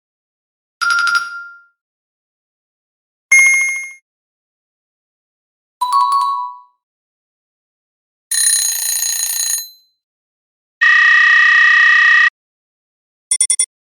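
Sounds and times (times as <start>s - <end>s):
electronic buzzer tone: 10.8s - 12.4s.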